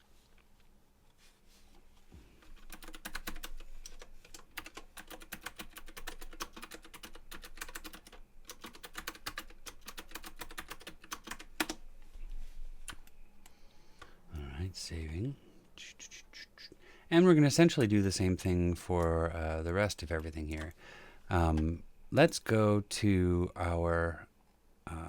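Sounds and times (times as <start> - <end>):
typing on computer keyboard: 2.5 - 11.8.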